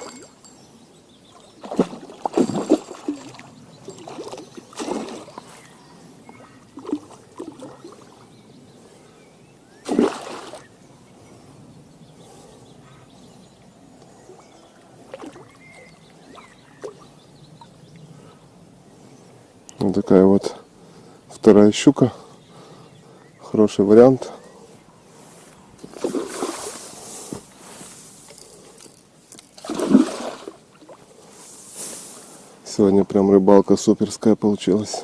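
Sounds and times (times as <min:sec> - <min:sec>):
water splashing and sloshing: 0:00.0 - 0:00.4, 0:01.4 - 0:08.3, 0:09.8 - 0:10.7, 0:14.2 - 0:17.7, 0:25.2 - 0:32.8.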